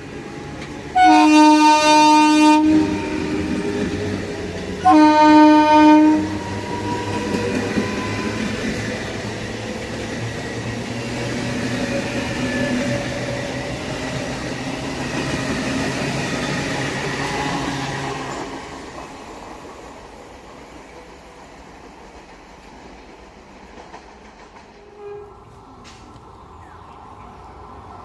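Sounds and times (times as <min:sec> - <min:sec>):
train wheels rumbling on rail: 0:00.0 - 0:28.0
train horn blast: 0:00.9 - 0:03.8, 0:04.8 - 0:08.5, 0:24.8 - 0:25.6.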